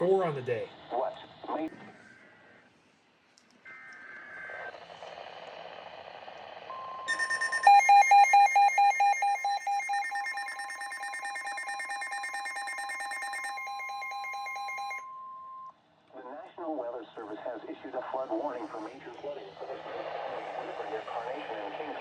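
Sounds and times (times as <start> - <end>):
pulsing electronic alarm beep: 6.8 - 15.3
data tones: 7.1 - 15.0
steady alert tone: 7.1 - 15.0.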